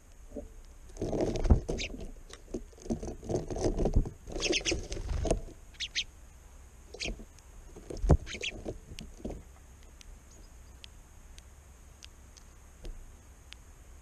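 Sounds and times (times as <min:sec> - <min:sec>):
sparrows chirping: 0:01.7 - 0:02.0, 0:04.3 - 0:04.9, 0:05.7 - 0:06.1, 0:06.9 - 0:07.2, 0:08.2 - 0:08.7, 0:10.2 - 0:10.9.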